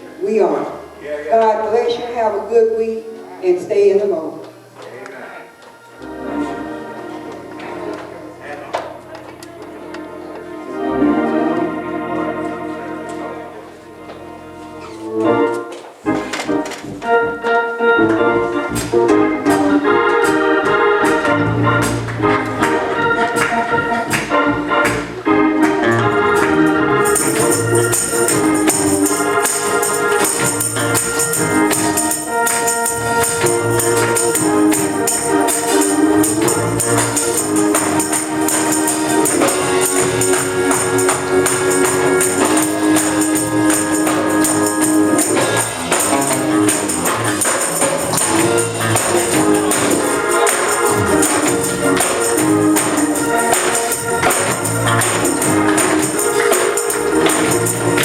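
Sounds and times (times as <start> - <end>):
gospel organ chords: 0.0 - 58.0
low beat: 16.1 - 58.0
tambourine jingling: 26.4 - 58.0.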